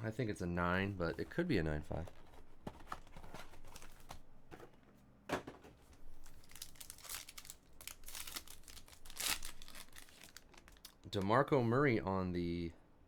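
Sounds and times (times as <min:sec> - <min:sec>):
cards rustling in plastic sleeves: 0:00.9 - 0:04.3, 0:05.9 - 0:11.3.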